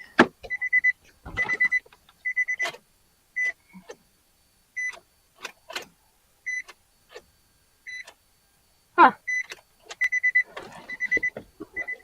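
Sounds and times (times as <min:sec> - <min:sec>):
multimeter beeping: 0:09.3 - 0:12.0.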